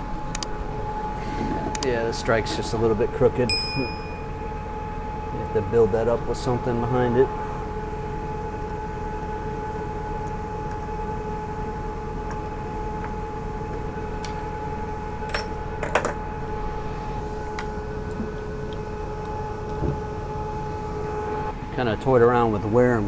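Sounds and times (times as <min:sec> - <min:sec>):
mechanical hum: 0:00.0 - 0:23.0.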